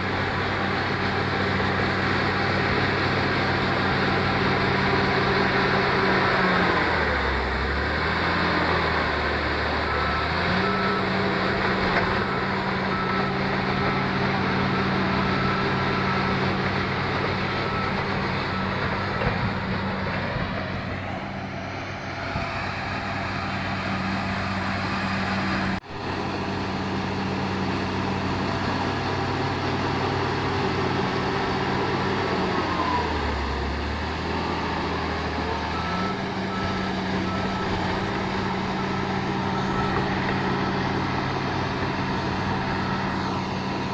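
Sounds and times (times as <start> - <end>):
diesel engine running: 0.0 - 43.9
reversing alarm beeping: 3.6 - 25.8, 35.3 - 43.9.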